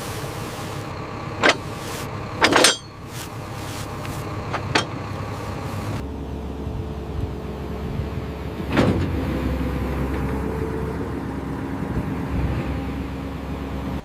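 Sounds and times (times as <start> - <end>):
engine running: 0.0 - 14.0
sharp metallic clanks: 1.4 - 3.3, 4.5 - 5.2.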